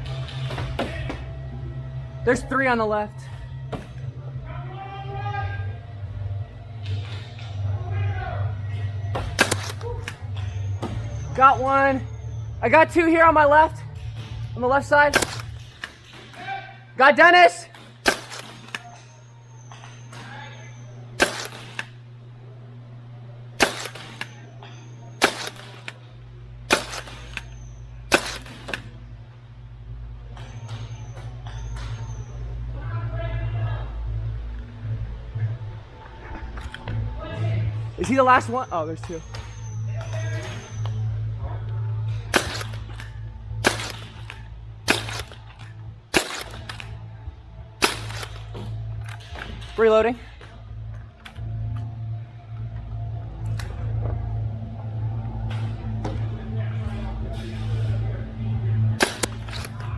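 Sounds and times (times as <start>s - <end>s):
steady low hum: 0.0s - 59.9s
foam dart blaster cracks: 9.2s - 10.2s, 15.1s - 16.1s, 18.0s - 18.9s, 21.2s - 21.9s, 23.6s - 24.4s, 25.2s - 26.0s, 26.7s - 28.9s, 42.3s - 47.0s, 47.8s - 48.7s, 59.0s - 59.8s
blaster priming click: 15.1s - 16.1s, 18.0s - 19.1s, 21.2s - 22.0s, 23.6s - 24.4s, 25.2s - 26.0s, 26.7s - 29.0s, 42.3s - 47.0s, 47.8s - 49.4s.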